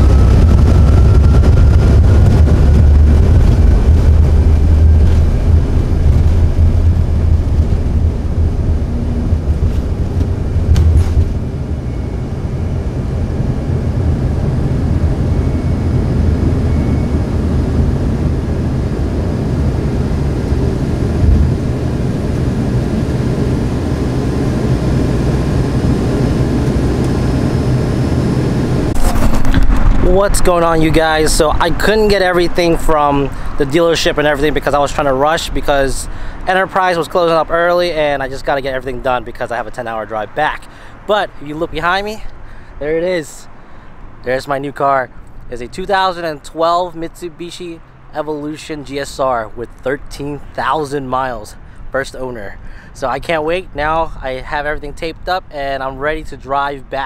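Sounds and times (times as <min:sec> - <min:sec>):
faint rising whine: 0:00.0 - 0:44.4
airliner cabin engine rumble: 0:00.0 - 0:46.2.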